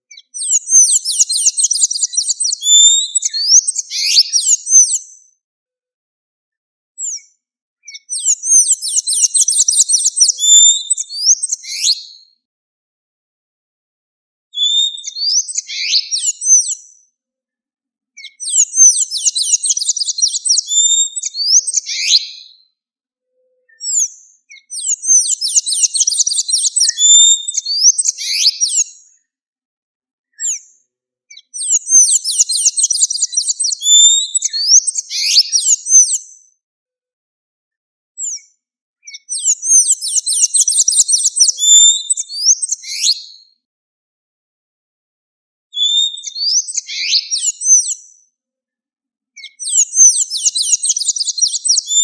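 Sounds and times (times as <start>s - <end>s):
bird twittering high-pitched: 0.1s - 5.0s, 7.9s - 12.3s, 14.6s - 17.1s, 18.2s - 22.6s, 23.3s - 29.1s, 30.4s - 36.2s, 38.2s - 43.5s, 45.8s - 48.3s, 49.4s - 52.0s.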